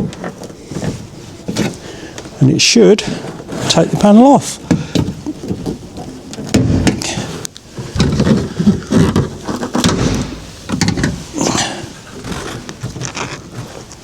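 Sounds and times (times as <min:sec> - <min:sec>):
plastic panel creaking: 0:03.1 - 0:14.0.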